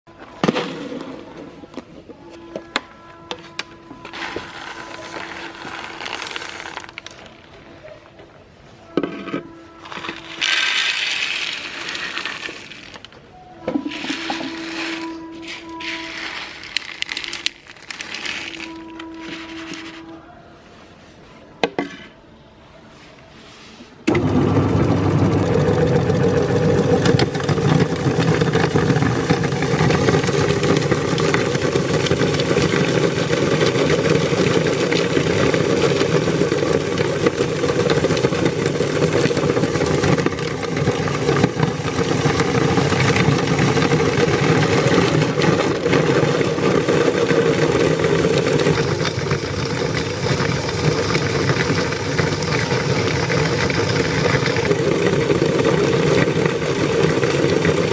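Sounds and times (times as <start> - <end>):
crunching and rattling grinding: 4.0 - 7.6, 9.0 - 13.2, 13.8 - 20.1, 26.4 - 57.9
electric meat grinder running: 24.1 - 57.9.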